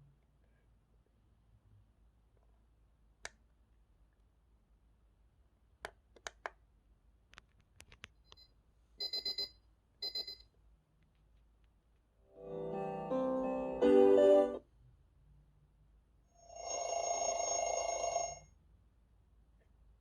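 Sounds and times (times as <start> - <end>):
electronic alarm beeping: 9.0 - 10.4.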